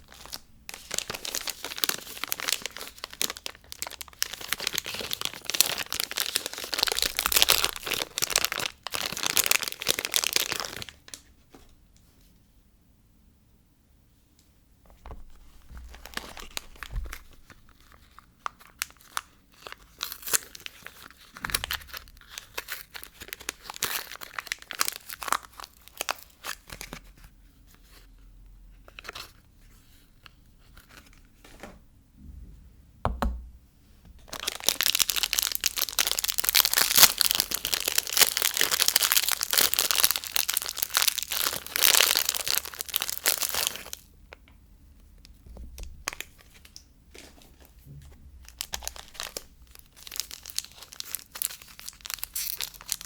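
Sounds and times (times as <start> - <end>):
packaging tearing and crinkling: 0.0 - 11.2, 15.6 - 27.0, 34.2 - 44.0, 45.8 - 47.8, 48.4 - 53.0.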